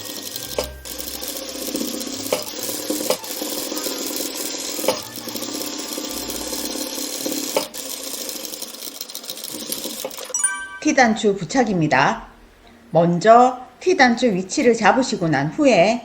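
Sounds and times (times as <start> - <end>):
sewing machine stitching: 0.0 - 10.3.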